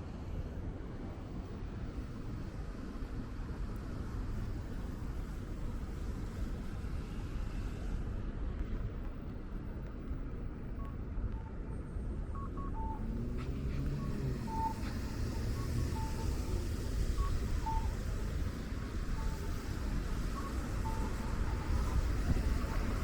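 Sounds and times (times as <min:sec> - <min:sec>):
city traffic rumble: 0:00.0 - 0:23.0
pedestrian crossing beeps: 0:10.6 - 0:23.0
rain: 0:12.8 - 0:23.0.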